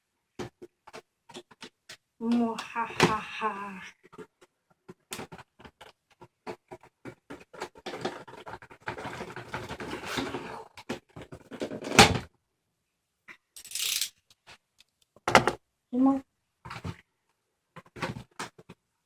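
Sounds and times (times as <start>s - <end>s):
packaging scratching and rustling: 6.5s - 10.4s, 13.6s - 14.2s.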